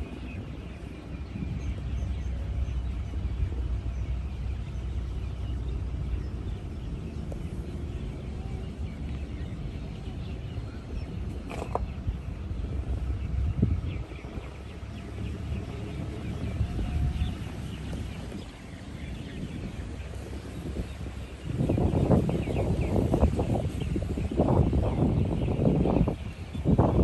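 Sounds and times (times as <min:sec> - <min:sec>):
steady low rumble: 0:00.0 - 0:27.0.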